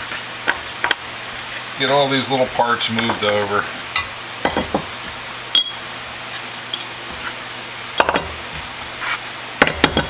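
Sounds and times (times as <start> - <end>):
small metal parts clinking: 6.7 - 7.0.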